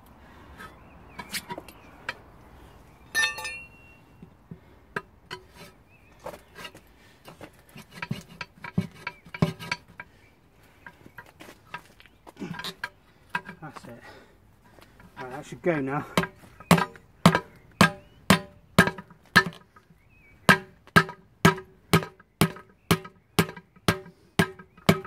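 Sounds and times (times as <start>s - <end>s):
ringing metal clang: 3.1s - 4.0s
pry bar knocking on wheel rim: 16.2s - 19.6s, 20.5s - 25.0s.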